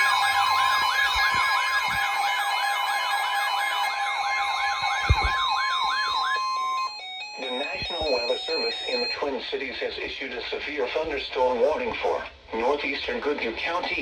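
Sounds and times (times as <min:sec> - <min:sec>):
fast wailing siren: 0:00.0 - 0:09.2
steady warning tone: 0:00.0 - 0:09.2.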